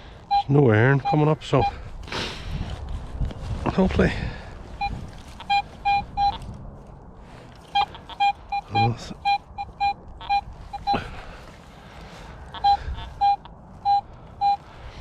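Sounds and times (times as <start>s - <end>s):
metal detector beeps: 0.3s - 1.8s, 4.8s - 6.6s, 7.6s - 11.2s, 12.6s - 14.7s.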